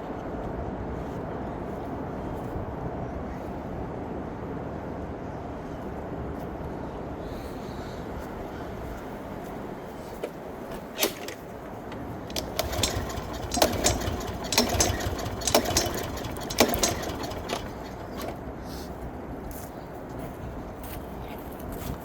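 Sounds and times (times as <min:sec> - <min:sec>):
recoil cord pulls: 0:10.9 - 0:11.5, 0:12.3 - 0:18.4
mower engine turning over: 0:10.9 - 0:18.5.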